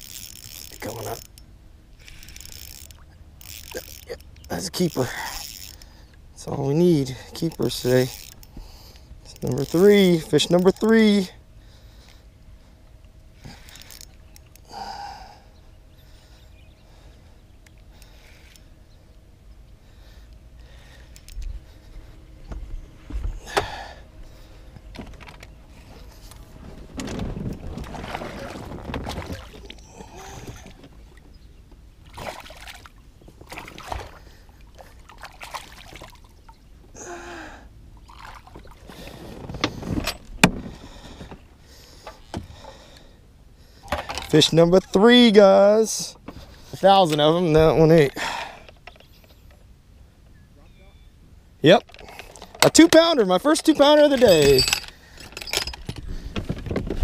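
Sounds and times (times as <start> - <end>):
knocks and taps on boat: 39.5 - 41.4.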